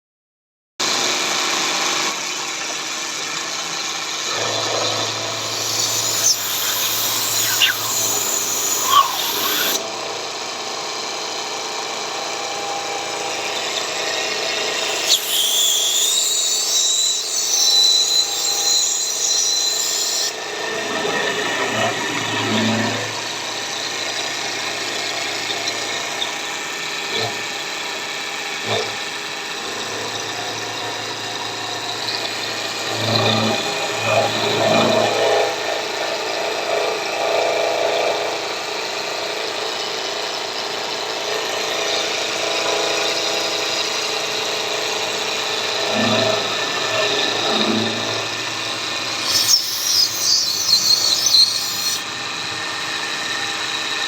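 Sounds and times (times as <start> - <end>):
machine whine: 0.9 - 36.1, 41.0 - 54.0
high-pitched cutting sound: 5.3 - 9.8, 14.7 - 20.3, 49.2 - 52.0.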